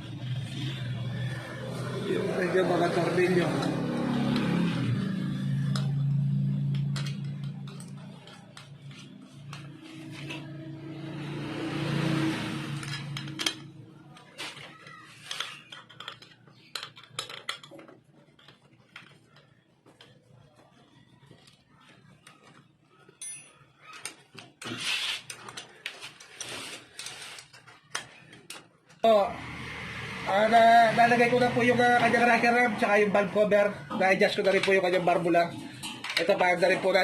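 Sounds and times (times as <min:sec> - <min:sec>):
metal tools clinking: 0:23.1 - 0:24.3.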